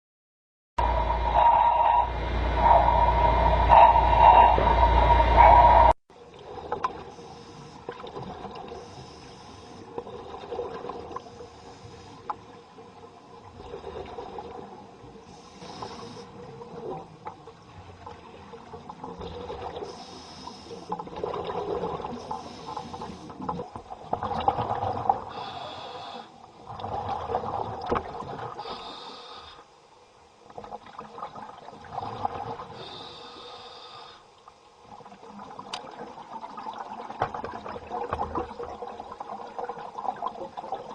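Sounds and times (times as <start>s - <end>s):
bubbling and rumbling underwater: 0.8s - 33.6s, 34.3s - 40.9s
regulator air hisses: 19.9s - 20.9s.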